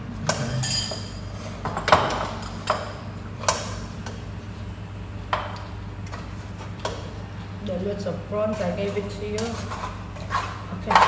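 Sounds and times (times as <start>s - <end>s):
spoon clinking against pot: 0.4s - 1.3s.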